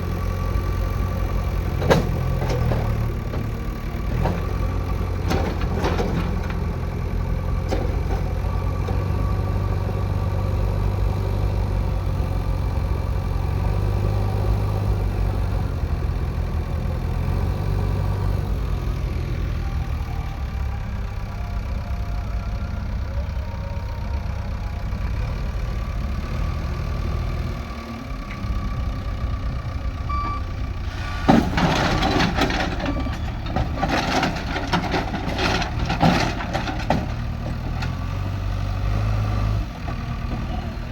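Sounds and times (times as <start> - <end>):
diesel engine running: 0.0 - 40.9
rough clattering: 31.0 - 38.0.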